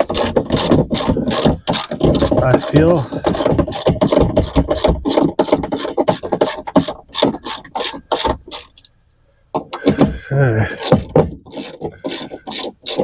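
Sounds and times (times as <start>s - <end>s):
ratchet wrench clicking: 0.1s - 2.3s.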